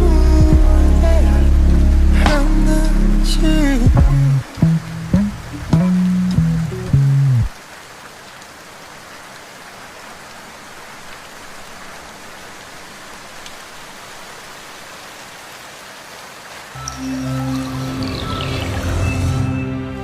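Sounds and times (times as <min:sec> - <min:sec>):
steady rain falling: 0:00.0 - 0:20.0.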